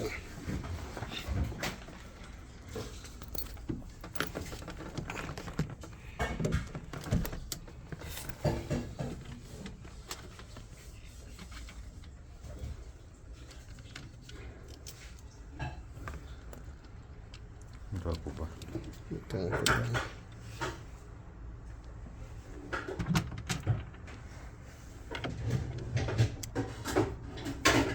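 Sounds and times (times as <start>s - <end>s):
hard objects clicking and clinking: 1.8s - 10.3s.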